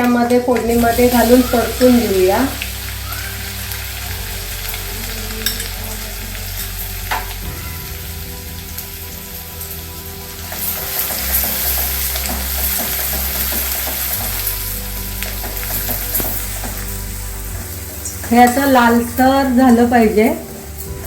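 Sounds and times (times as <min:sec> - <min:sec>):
paste sizzling in hot oil: 0:00.0 - 0:21.0.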